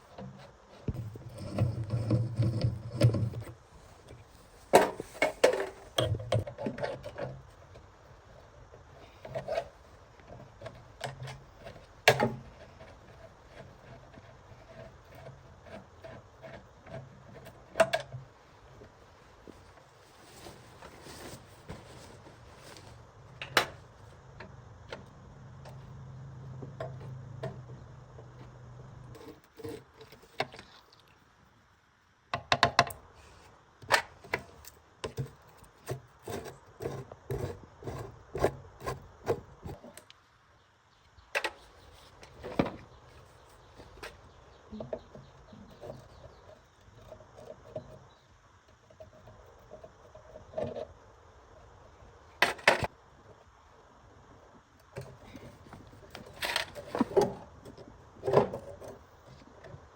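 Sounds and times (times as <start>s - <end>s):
rubbing and scraping: 0.2s - 7.4s, 18.5s - 23.1s
sharp knocks and taps on metal: 32.4s - 33.0s.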